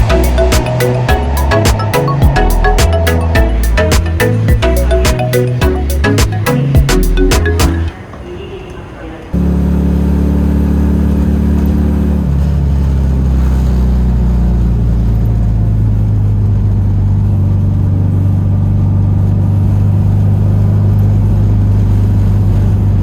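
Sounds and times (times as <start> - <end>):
car engine running: 0.0 - 5.0.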